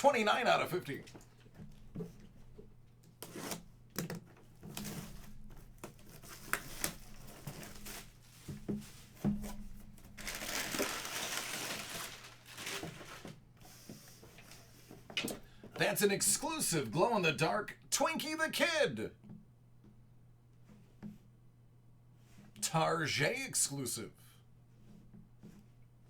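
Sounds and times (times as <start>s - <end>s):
packing material crinkling and rustling: 3.2s - 14.7s.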